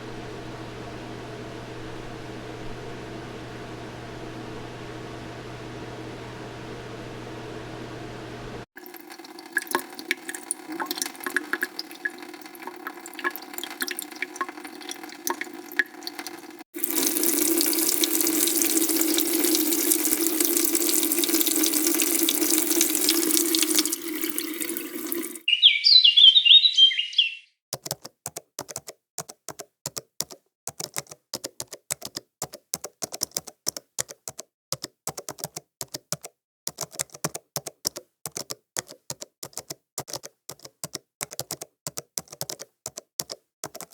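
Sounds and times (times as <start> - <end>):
small drips and clicks: 8.8 - 25.5, 27.7 - 43.9
tap water running into sink: 8.8 - 25.5.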